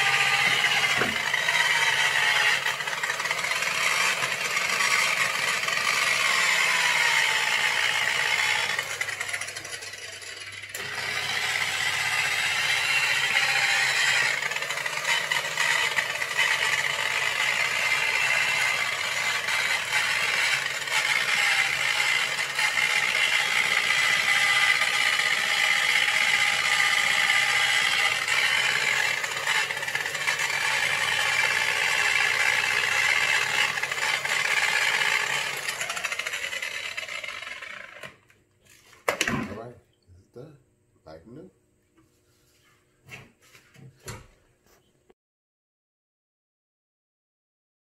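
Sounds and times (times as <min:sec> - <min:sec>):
electric buffer whining: 0:00.0 - 0:38.2.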